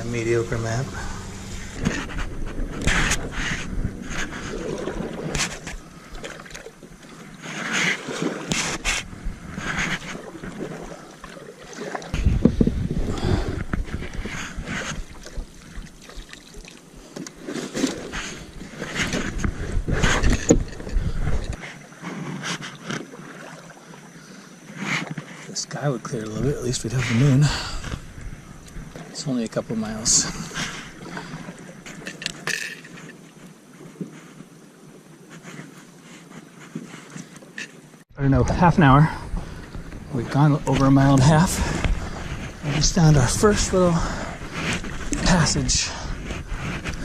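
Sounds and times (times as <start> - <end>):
wind buffeting microphone: 0.0 - 6.2, 8.7 - 11.0, 12.1 - 16.3, 18.4 - 21.6, 26.2 - 29.1, 38.2 - 47.0
paddle strokes splashing water: 0.0 - 38.0, 39.3 - 47.0.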